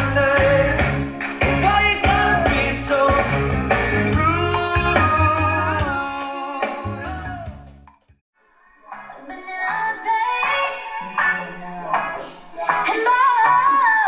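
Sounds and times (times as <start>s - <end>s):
guitar: 0.0s - 7.7s, 8.8s - 14.0s
man singing: 0.0s - 7.7s
reggae-pop song: 0.0s - 8.0s, 8.9s - 14.0s
drums: 0.0s - 8.2s, 8.9s - 14.0s.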